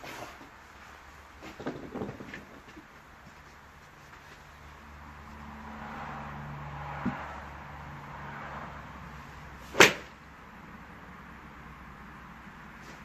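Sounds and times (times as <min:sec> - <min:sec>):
vehicle engine hum passing: 0:03.2 - 0:13.0.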